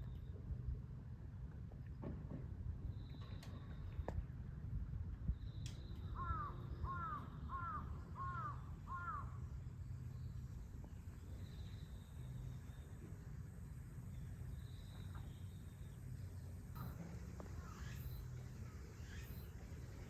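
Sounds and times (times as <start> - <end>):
outdoor background noise: 0.0 - 20.0
crow cawing: 6.2 - 9.3.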